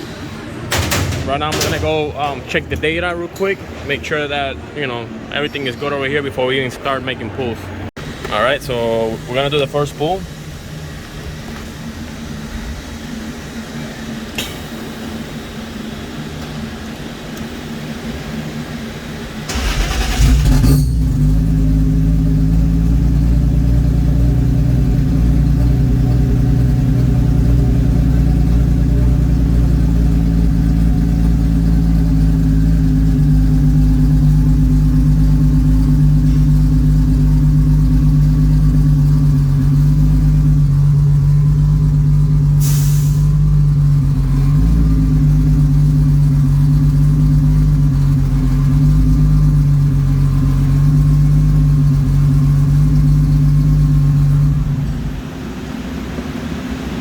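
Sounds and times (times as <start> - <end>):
car engine idling: 0.0 - 57.0
loud steady engine drone: 0.0 - 57.0
brief hiss: 42.6 - 43.4.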